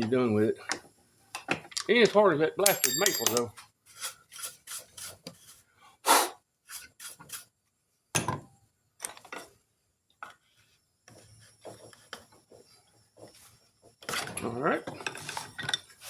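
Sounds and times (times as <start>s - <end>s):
hand tool scraping wood: 3.9s - 5.5s.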